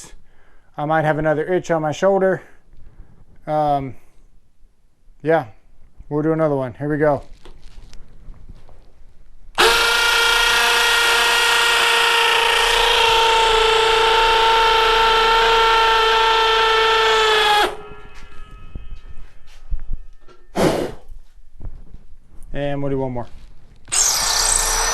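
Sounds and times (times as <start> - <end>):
hammer drill boring into concrete: 9.6 - 17.8, 23.9 - 24.9.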